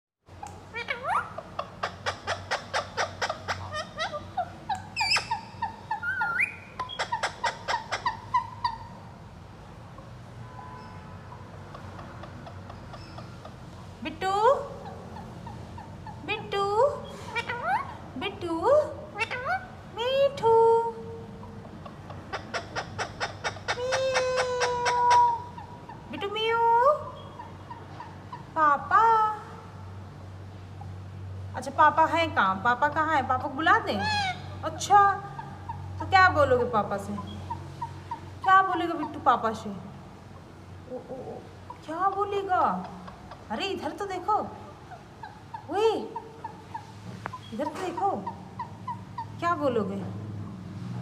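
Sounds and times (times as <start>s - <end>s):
parrot chirping: 0.4s - 10.1s, 10.7s - 14.0s, 14.7s - 18.1s, 19.1s - 20.0s, 21.3s - 28.6s, 32.8s - 49.5s
parrot whistling: 1.9s - 8.9s.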